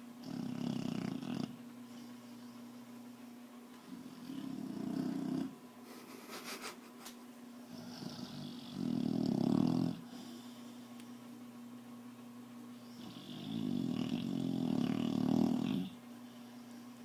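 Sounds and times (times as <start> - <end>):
dog snoring: 0.2 - 1.6, 3.8 - 5.6, 7.7 - 10.5, 12.8 - 16.0.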